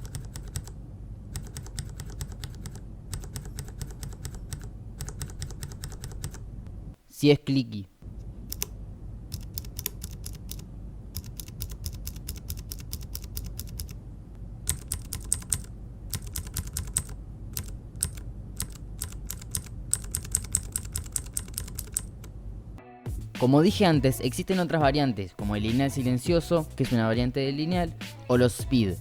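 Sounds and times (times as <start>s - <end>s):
mechanical keyboard typing: 0.0s - 6.4s, 9.3s - 10.6s, 11.2s - 14.0s, 14.7s - 22.3s.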